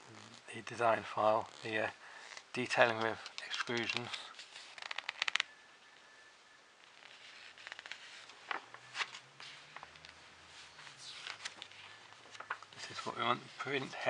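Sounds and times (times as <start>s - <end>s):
handling clicks and rustles: 2.5s - 5.5s.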